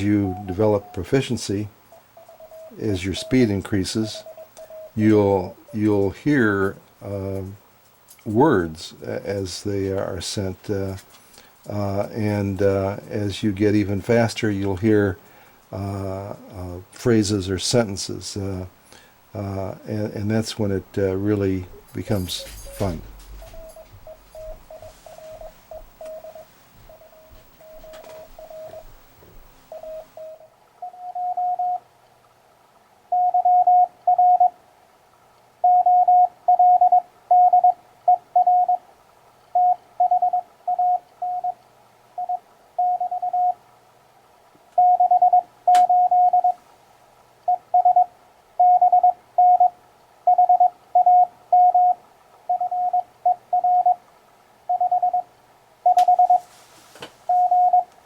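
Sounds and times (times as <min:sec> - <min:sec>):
morse code tone: 0:00.0 - 0:06.0, 0:19.4 - 0:31.8, 0:33.1 - 0:34.6, 0:35.6 - 0:38.8, 0:39.6 - 0:41.6, 0:42.2 - 0:43.6, 0:44.8 - 0:46.6, 0:47.5 - 0:54.0, 0:54.7 - 0:56.5, 0:57.3 - 0:57.9
radio hiss: 0:00.0 - 0:07.7, 0:08.4 - 0:30.5.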